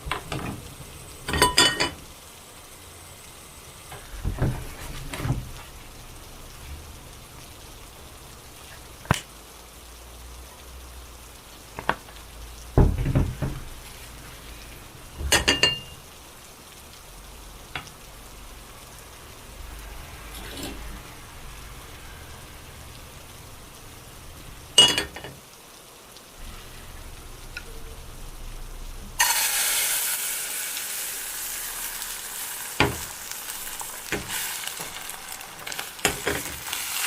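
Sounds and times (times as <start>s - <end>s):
steady soft hiss: 0.0s - 37.0s
utensils and dishes clinking: 1.2s - 2.0s, 15.2s - 16.0s, 24.8s - 25.4s.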